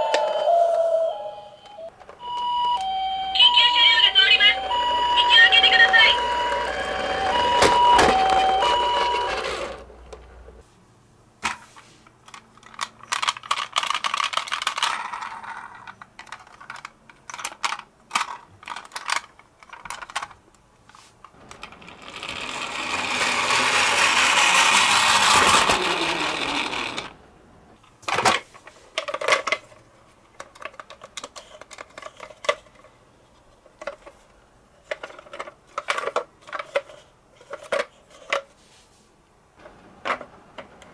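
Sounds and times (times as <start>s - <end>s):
toy two-tone siren: 0.0s - 9.9s
toy rolling noise: 0.0s - 10.6s, 12.3s - 20.4s, 21.4s - 27.2s
plastic clicks and rattles: 12.2s - 20.6s, 29.0s - 32.9s, 34.8s - 38.5s.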